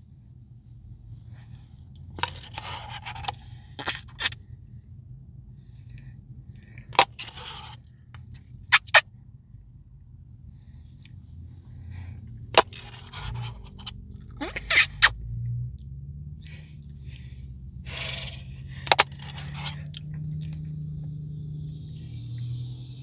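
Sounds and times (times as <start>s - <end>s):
spoon scraping ice cream cup: 2.2s - 4.4s, 7.0s - 7.8s, 8.7s - 9.0s, 12.6s - 15.1s, 17.9s - 19.9s.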